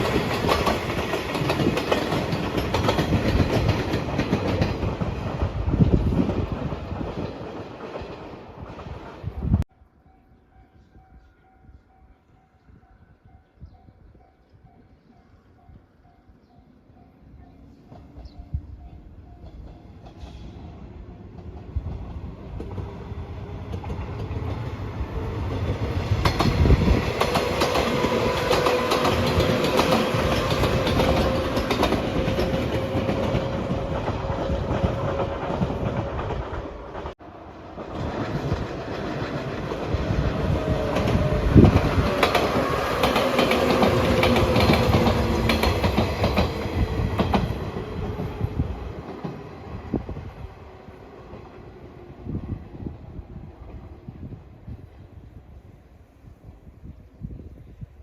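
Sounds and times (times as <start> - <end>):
train wheels clattering over rail joints: 0.0 - 9.0, 25.7 - 37.2, 37.8 - 48.2.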